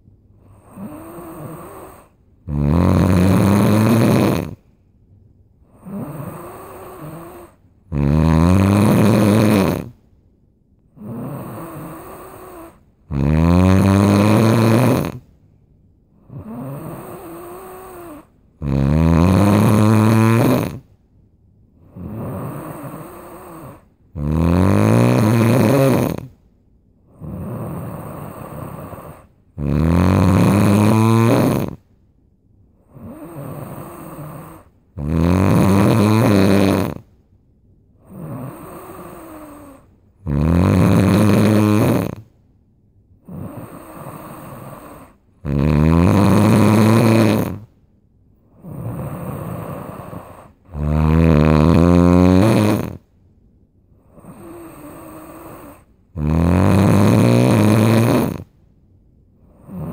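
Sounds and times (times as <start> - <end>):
quiet breathing: 0.0 - 13.2, 13.8 - 24.4, 25.0 - 59.9
person snoring loudly: 0.4 - 4.6, 5.7 - 10.0, 11.0 - 15.3, 16.2 - 20.9, 21.8 - 26.4, 27.1 - 31.8, 32.9 - 37.1, 38.0 - 42.3, 43.2 - 47.7, 48.5 - 53.0, 54.1 - 58.5, 59.5 - 59.9.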